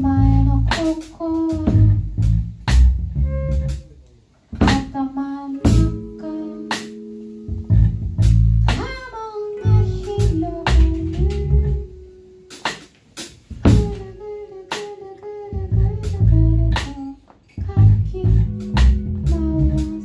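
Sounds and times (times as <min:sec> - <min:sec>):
plucked guitar notes: 0:00.0 - 0:12.8, 0:17.6 - 0:20.0
drum hits: 0:04.6 - 0:05.0, 0:05.7 - 0:06.1, 0:07.8 - 0:09.0, 0:12.5 - 0:14.0.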